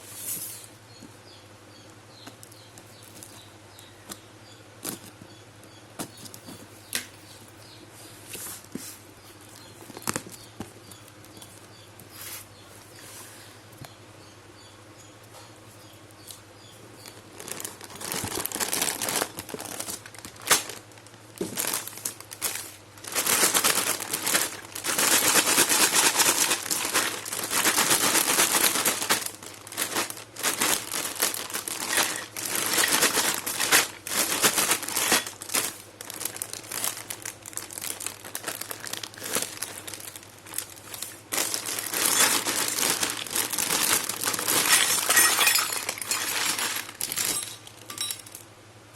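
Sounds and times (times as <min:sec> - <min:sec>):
packaging crinkling and rustling: 0:08.3 - 0:11.7, 0:17.0 - 0:48.4.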